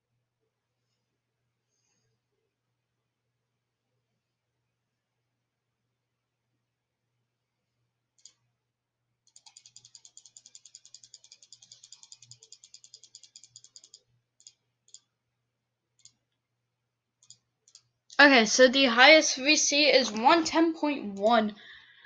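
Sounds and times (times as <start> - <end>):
computer mouse clicking: 8.2 - 8.4, 9.2 - 15.1, 16.0 - 16.3, 17.2 - 18.0.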